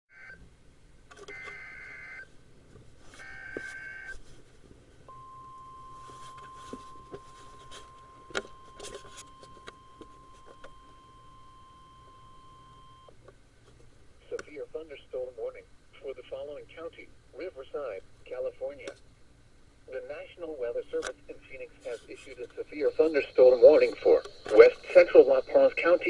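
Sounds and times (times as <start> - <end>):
radio hiss with crackles: 1.1 - 26.0
steady warning alarm tone: 5.1 - 13.1.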